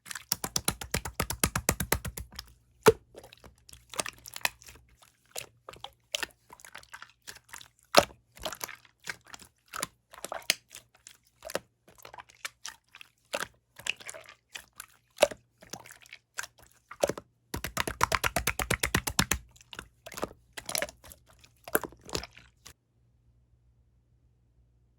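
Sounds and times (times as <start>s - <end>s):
slime squished by hand: 0.1s - 10.8s, 15.7s - 22.8s.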